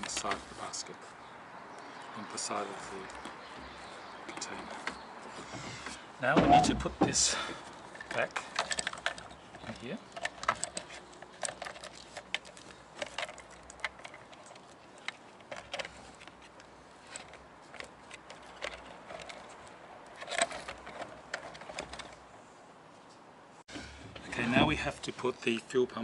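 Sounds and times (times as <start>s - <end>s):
plastic parts clicking and rattling: 0.0s - 0.4s, 6.6s - 22.3s.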